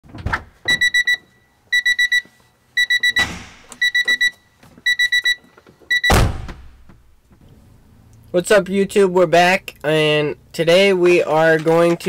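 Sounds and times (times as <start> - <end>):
electronic beeper beeping: 2.8 - 6.2
thud: 3.2 - 3.8, 6.1 - 7.0.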